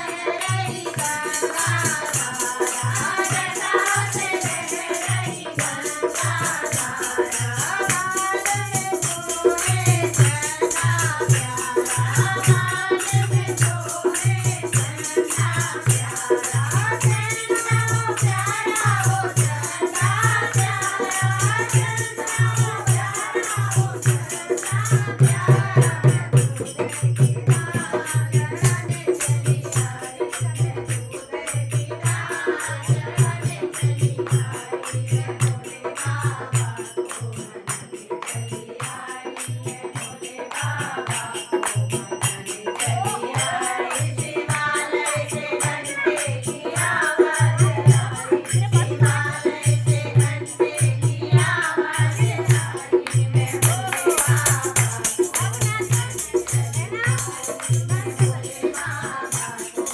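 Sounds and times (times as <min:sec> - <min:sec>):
shaker jingles: 0:00.0 - 0:59.9
steady drum beat: 0:00.0 - 0:59.9
person singing: 0:51.3 - 0:59.9.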